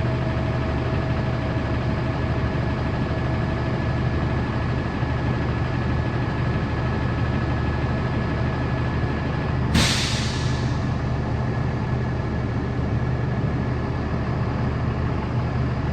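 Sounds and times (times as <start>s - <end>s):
heavy equipment engine idling: 0.0s - 15.9s
hiss of released air: 9.8s - 11.1s.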